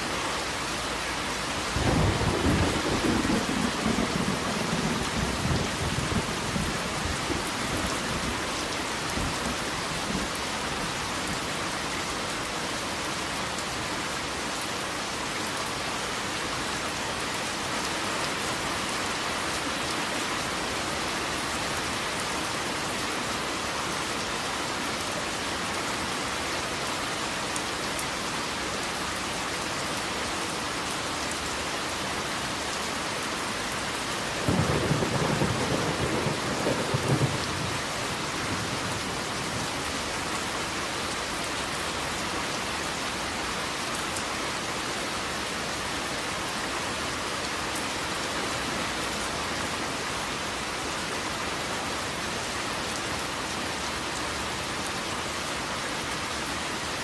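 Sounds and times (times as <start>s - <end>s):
heavy rain falling: 0.0s - 57.0s
thunder rumbling: 1.8s - 7.5s, 34.4s - 39.4s.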